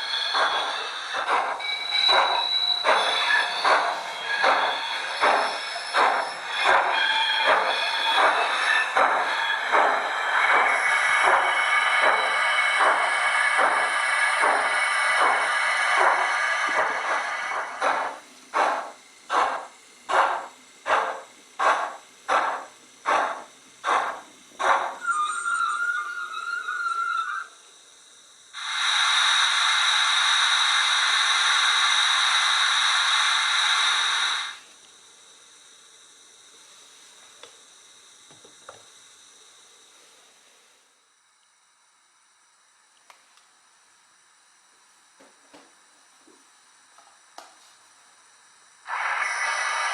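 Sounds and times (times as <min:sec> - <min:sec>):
steam locomotive exhaust chuffs: 0:00.0 - 0:34.7, 0:48.5 - 0:49.9
loud steady steam hiss: 0:00.0 - 0:42.8, 0:45.8 - 0:49.9
brief squeal: 0:00.1 - 0:08.9, 0:25.0 - 0:27.6.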